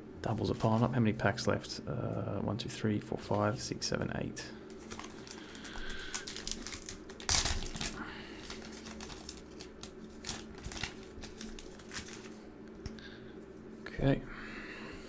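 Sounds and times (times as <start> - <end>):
foil wrapper ripping: 4.7 - 12.4
foil wrapper crinkling: 4.7 - 12.5.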